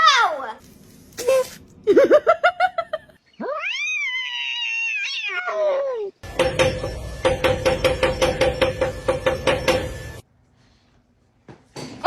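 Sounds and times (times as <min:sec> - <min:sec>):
cat yowling: 0:03.4 - 0:06.2.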